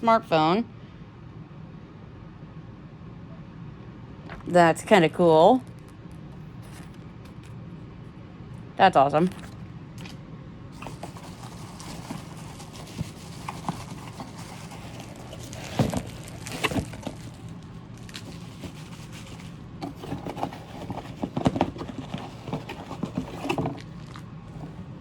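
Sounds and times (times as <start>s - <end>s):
cardboard packaging taps and rustles: 10.8s - 24.2s.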